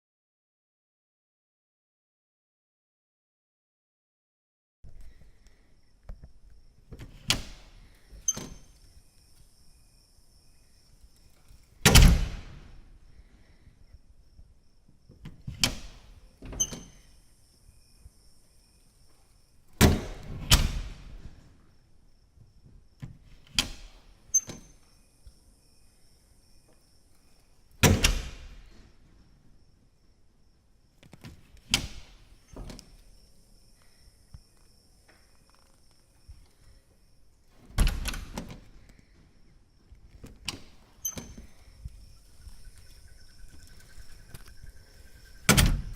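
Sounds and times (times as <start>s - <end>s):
door opening and shutting: 6.8s - 9.0s, 11.6s - 13.2s, 15.1s - 17.3s, 19.7s - 21.5s, 23.0s - 25.0s, 27.8s - 29.0s, 31.1s - 33.3s, 37.5s - 39.1s, 40.1s - 42.1s, 45.3s - 45.9s.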